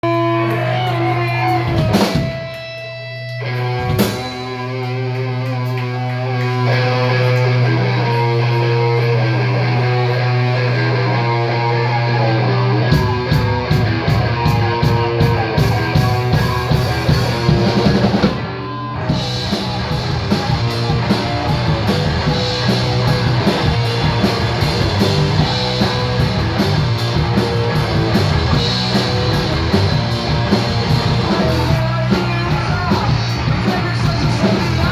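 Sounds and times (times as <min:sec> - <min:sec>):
drums: 0:00.0 - 0:34.9
live rock band playing: 0:00.0 - 0:34.9
picked electric guitar notes: 0:00.0 - 0:34.9.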